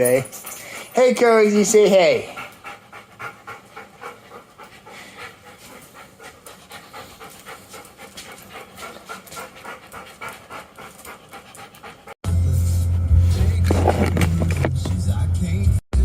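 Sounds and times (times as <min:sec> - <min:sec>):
dog panting rapidly: 0:00.0 - 0:12.2.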